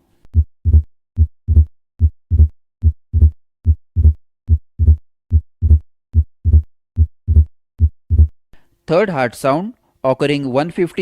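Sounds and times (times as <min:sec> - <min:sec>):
heartbeat lub-dub: 0:00.3 - 0:08.3.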